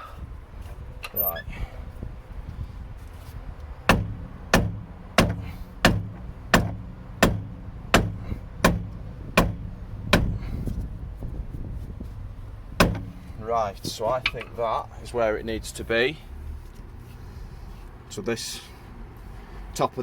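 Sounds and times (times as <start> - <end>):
hammer strikes on metal part: 3.9 - 10.4, 12.8 - 13.2.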